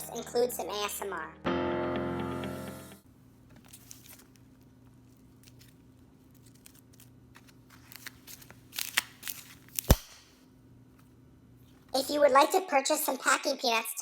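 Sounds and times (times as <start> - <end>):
sharp slime pop: 9.8 - 10.3.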